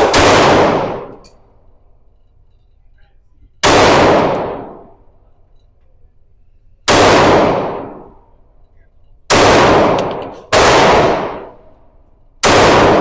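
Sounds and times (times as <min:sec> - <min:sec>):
gunshots: 0:00.0 - 0:01.2, 0:03.6 - 0:05.0, 0:06.9 - 0:08.2, 0:09.3 - 0:11.7, 0:12.4 - 0:13.0
faint clinks: 0:01.2 - 0:03.6, 0:05.0 - 0:06.8, 0:08.2 - 0:09.3.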